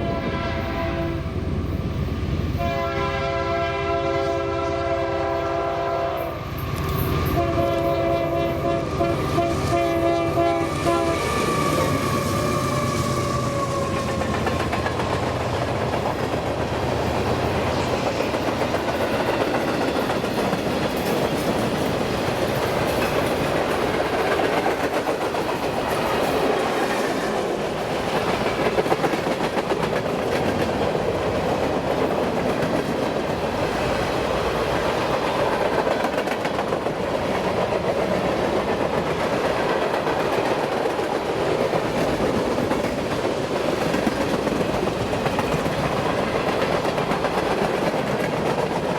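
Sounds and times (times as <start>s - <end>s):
train cars rolling on rails: 0.0s - 48.9s
locomotive engine hum: 4.5s - 24.8s.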